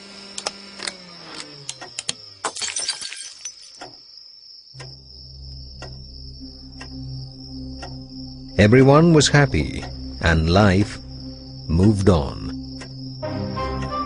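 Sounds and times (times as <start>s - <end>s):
insects chirring: 0.9s - 14.0s
glass shattering: 2.4s - 3.8s
steady low hum: 4.8s - 14.0s.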